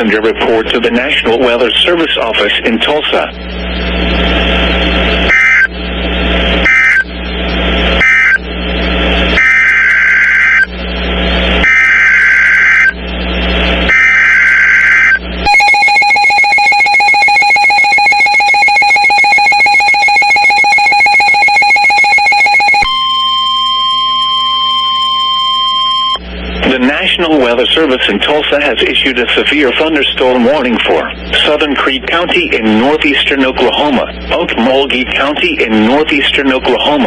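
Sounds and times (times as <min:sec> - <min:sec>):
radio hiss: 0:00.0 - 0:15.5, 0:26.2 - 0:37.0
steady alert tone: 0:14.0 - 0:23.2.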